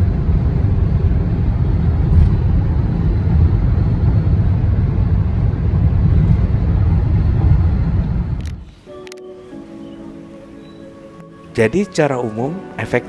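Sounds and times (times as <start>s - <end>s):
car cabin road roar: 0.0s - 8.8s.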